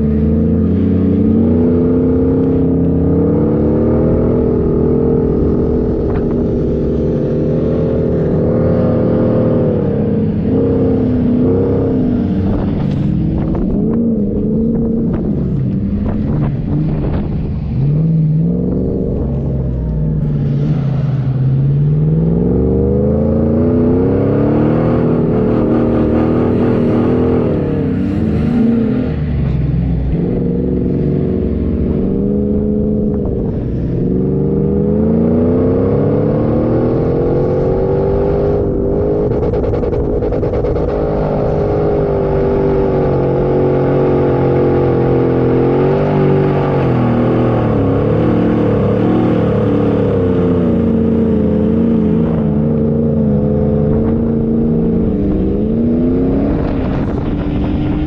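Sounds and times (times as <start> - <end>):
off-road vehicle engine revving: 0.0 - 58.0.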